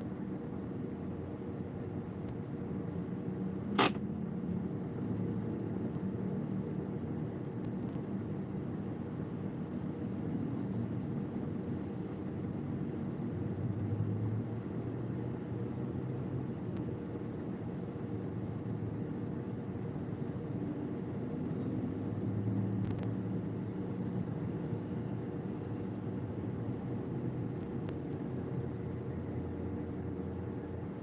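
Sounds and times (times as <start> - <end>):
traffic engines humming: 0.0 - 31.0
sharp click: 3.8 - 4.0.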